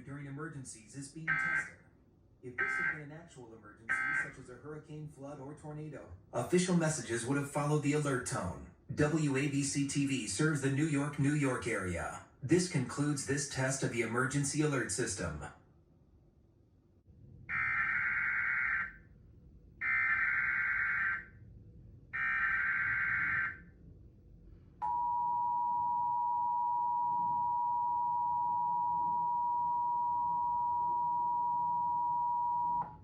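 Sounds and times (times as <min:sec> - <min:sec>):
digital data bursts: 0:03.9 - 0:04.3.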